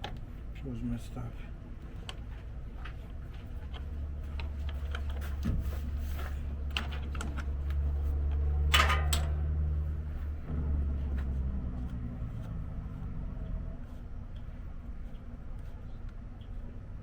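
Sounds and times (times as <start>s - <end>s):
steady low rumble: 0.2s - 17.0s
parts and tools clattering: 8.6s - 9.6s.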